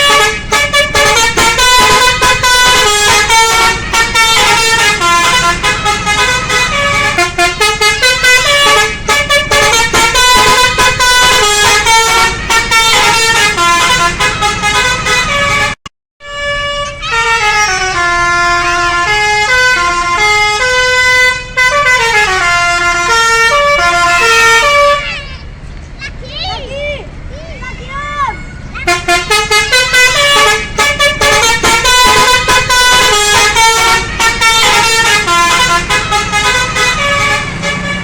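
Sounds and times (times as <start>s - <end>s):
bus musical horn tune: 0.0s - 25.2s, 28.8s - 38.0s.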